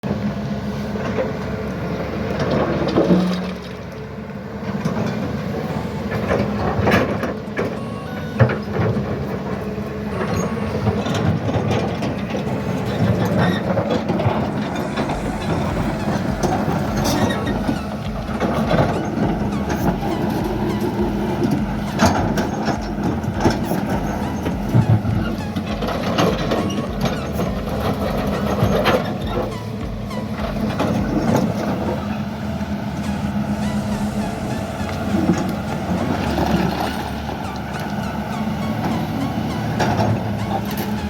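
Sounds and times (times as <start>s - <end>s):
excavator diesel engine running: 0.0s - 41.0s
machine clanks and knocks: 10.2s - 32.1s.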